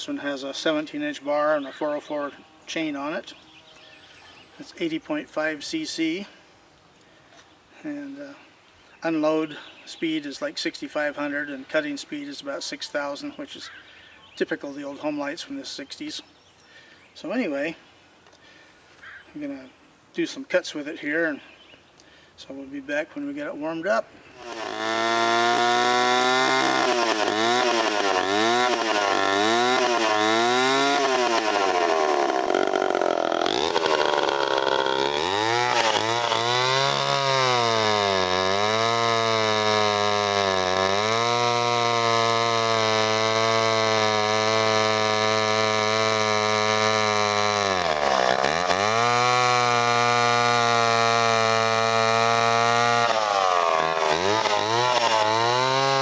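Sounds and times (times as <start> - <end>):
chainsaw revving: 0.0 - 5.0, 24.2 - 56.0.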